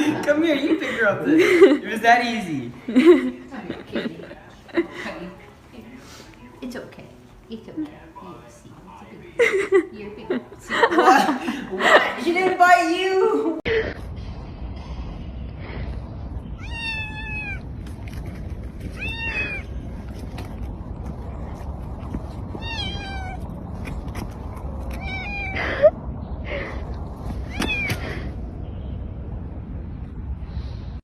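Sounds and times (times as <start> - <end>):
cat meowing: 16.6 - 17.7, 18.9 - 19.8, 22.6 - 23.5, 24.9 - 25.8, 27.4 - 28.2.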